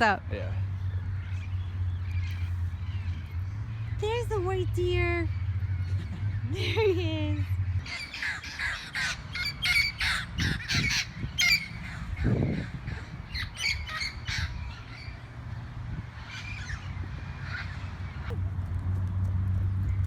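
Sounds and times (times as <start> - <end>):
parrots squawking: 7.8 - 18.4.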